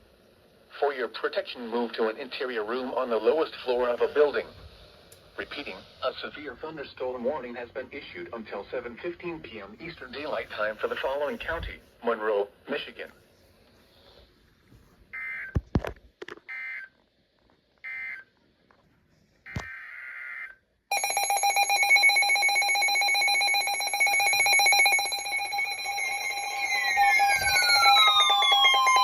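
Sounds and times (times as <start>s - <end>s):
loud electronic alert tone: 23.9s - 29.0s
screeching digital data bursts: 24.6s - 29.0s
falling pitch sweeps: 25.1s - 29.0s.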